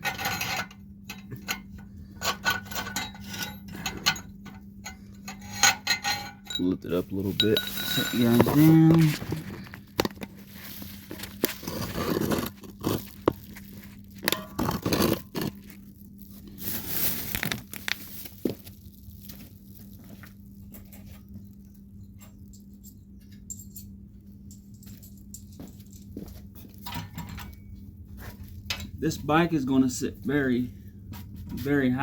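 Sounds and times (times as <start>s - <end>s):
metal parts knocking and scraping: 0.0s - 13.6s, 14.2s - 15.6s, 26.8s - 27.7s
steady low hum: 0.0s - 32.0s.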